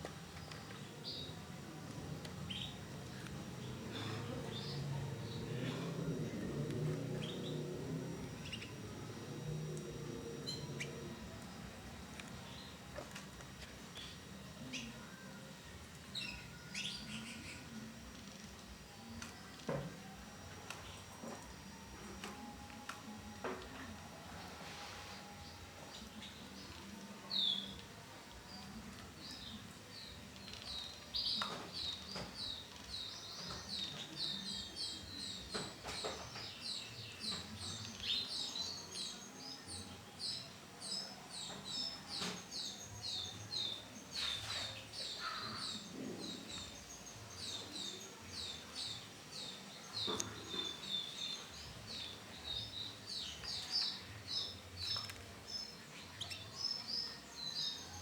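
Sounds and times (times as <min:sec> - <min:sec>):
canary chirping: 0:29.3 - 0:58.0.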